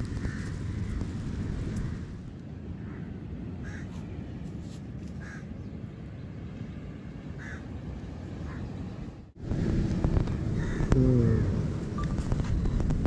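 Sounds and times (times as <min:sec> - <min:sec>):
wind rushing: 0:09.0 - 0:13.0.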